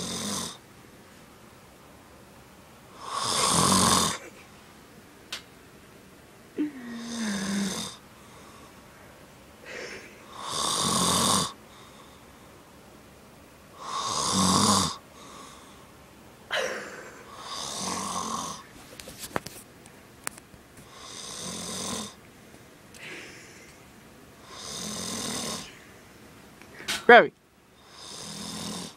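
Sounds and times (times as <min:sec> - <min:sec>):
man snoring: 0:00.0 - 0:00.6, 0:03.0 - 0:04.2, 0:06.7 - 0:08.0, 0:09.7 - 0:11.6, 0:13.8 - 0:15.6, 0:17.2 - 0:18.6, 0:20.9 - 0:22.2, 0:24.4 - 0:25.7, 0:27.8 - 0:28.9
quiet breaths: 0:06.6 - 0:10.8, 0:11.5 - 0:12.7, 0:15.0 - 0:16.0.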